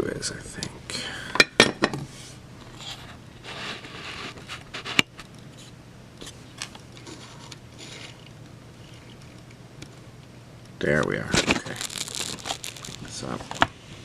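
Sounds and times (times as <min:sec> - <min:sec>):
faint steady hum: 0:00.0 - 0:14.0
soft scraping rustle: 0:07.0 - 0:08.2.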